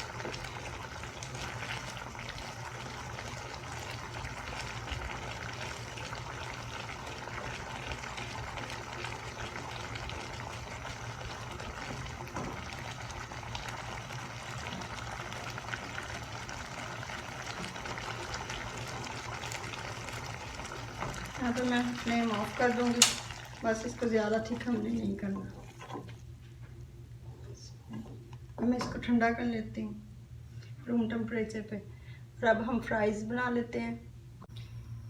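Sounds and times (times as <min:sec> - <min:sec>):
sauce simmering in a pan: 0:00.0 - 0:26.3.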